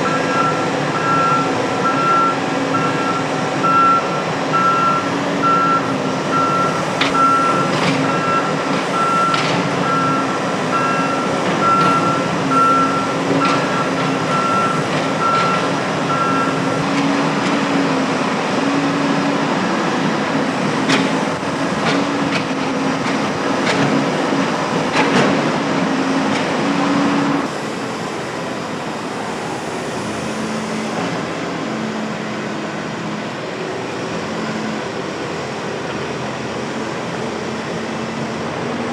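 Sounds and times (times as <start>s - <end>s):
warning alarm beeping: 0.0s - 16.6s
diesel engine running: 0.0s - 38.9s.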